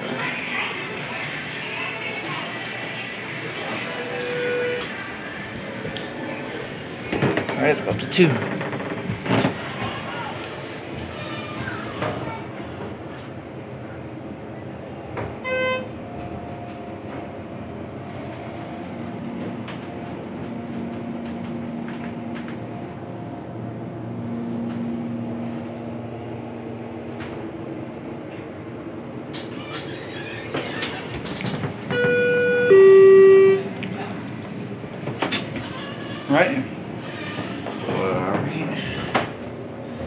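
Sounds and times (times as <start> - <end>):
elevator car humming: 0.0 - 40.0
elevator arrival chime: 3.9 - 5.0, 31.9 - 33.8
elevator clunks and clicks: 29.3 - 33.8
short electronic beep: 32.0 - 33.6.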